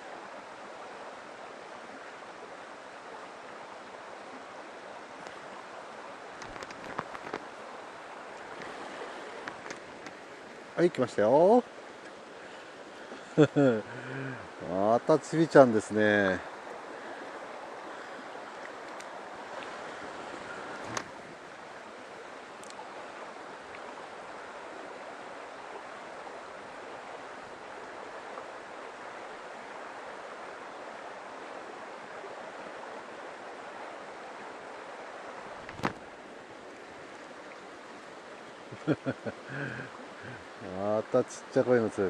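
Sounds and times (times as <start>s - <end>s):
stream water rushing: 0.0s - 42.0s.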